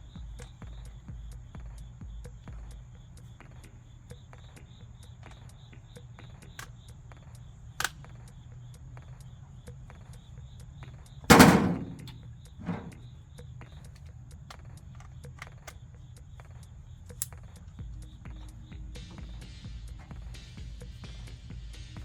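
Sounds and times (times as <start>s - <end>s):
loud sharp knock: 11.3s - 13.0s
faint high ticks: 13.4s - 18.6s.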